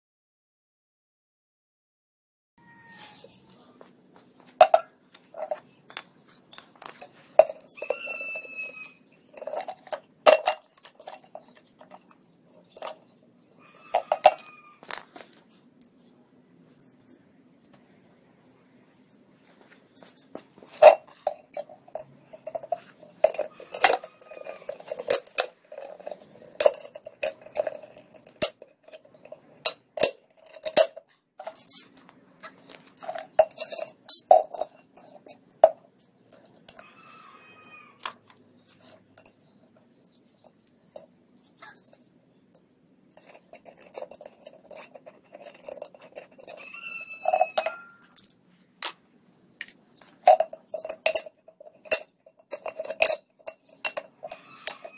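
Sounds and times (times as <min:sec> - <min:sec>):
brief squeaks: 0:02.6 - 0:03.7
metal clinks and knocks on kettle: 0:47.2 - 0:48.3.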